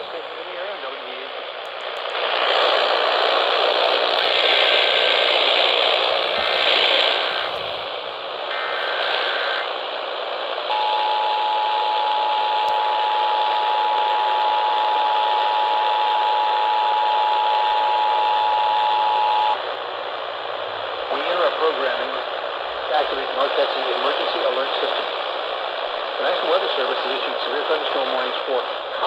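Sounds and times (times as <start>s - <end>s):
radio static: 0.0s - 29.0s
digital header tone bursts: 8.5s - 9.8s
two-tone attention signal: 10.7s - 19.6s.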